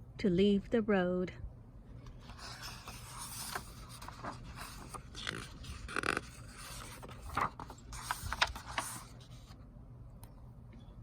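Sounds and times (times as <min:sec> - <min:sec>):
book pages rustling and turning: 0:02.0 - 0:09.6.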